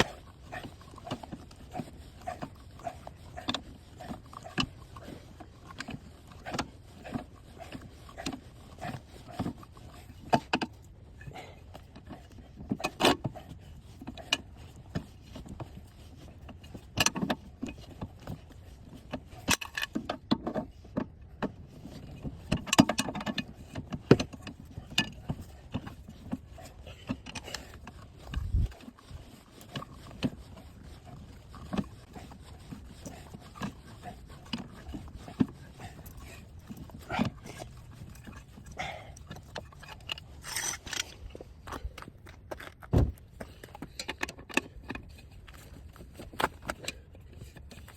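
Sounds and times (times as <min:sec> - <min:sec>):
metal tools clinking: 0:39.5 - 0:41.2
dull low thump: 0:42.9 - 0:43.2.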